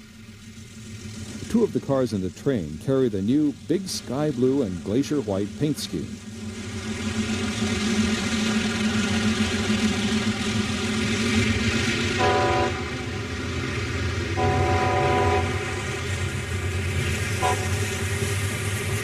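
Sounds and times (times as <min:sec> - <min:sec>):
train rumbling: 0:00.0 - 0:19.0
train air horn: 0:12.2 - 0:13.2, 0:14.3 - 0:16.6, 0:17.3 - 0:18.5.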